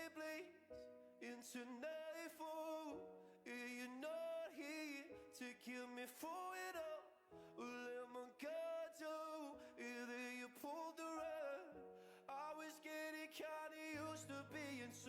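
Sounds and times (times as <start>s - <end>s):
person singing: 1.2s - 15.0s.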